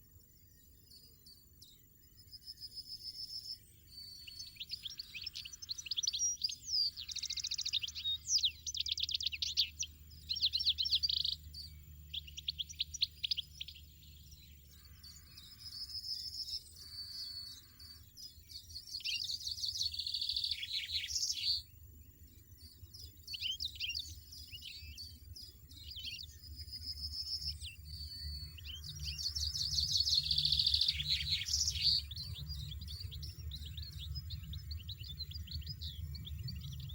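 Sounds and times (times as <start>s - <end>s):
goldfinch twittering: 22.6s - 36.9s.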